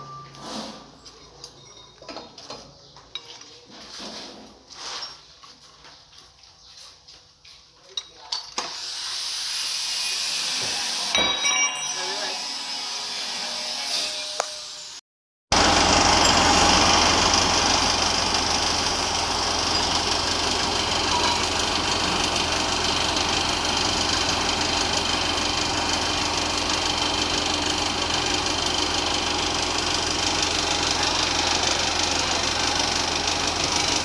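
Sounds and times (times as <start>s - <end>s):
combine harvester diesel engine: 15.5s - 34.0s.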